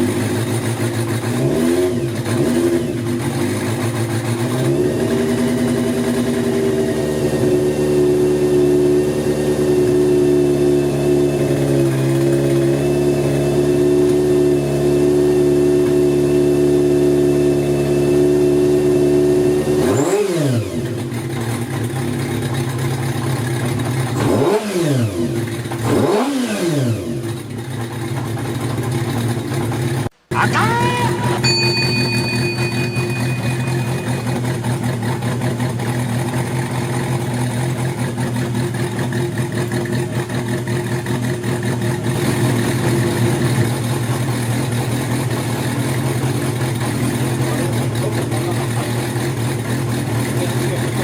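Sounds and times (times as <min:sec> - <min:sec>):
motorcycle engine revving: 0:00.0 - 0:30.4, 0:31.2 - 0:51.0.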